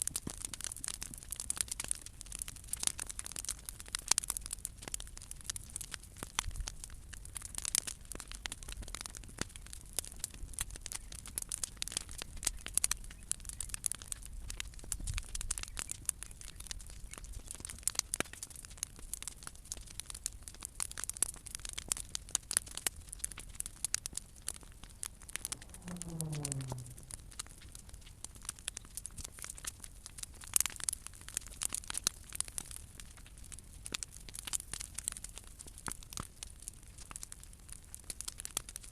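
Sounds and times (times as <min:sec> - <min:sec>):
bonfire crackling and popping: 0:00.0 - 0:38.9
short falling tone: 0:25.4 - 0:27.2.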